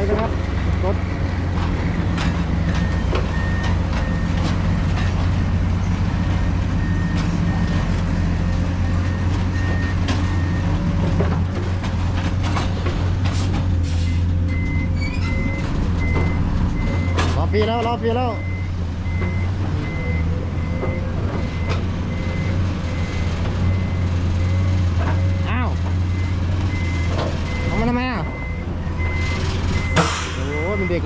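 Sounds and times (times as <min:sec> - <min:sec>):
truck diesel engine running: 0:00.0 - 0:31.0
reversing alarm beeping: 0:02.6 - 0:05.2, 0:14.0 - 0:31.0.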